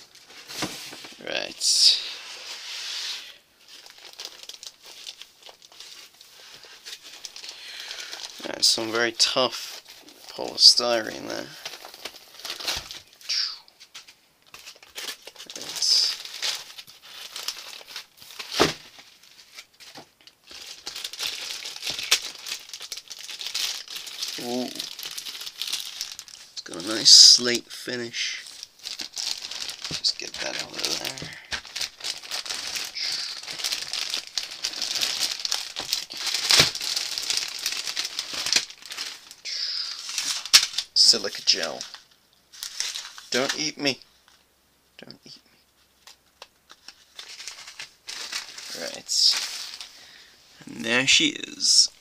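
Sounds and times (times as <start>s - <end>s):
packaging rustling and crinkling: 0.0s - 13.2s, 13.8s - 44.4s, 45.7s - 50.1s.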